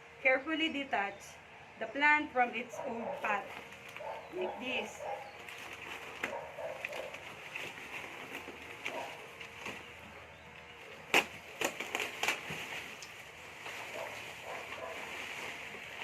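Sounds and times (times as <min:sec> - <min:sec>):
root ball crackling from pot: 0:10.9 - 0:16.0.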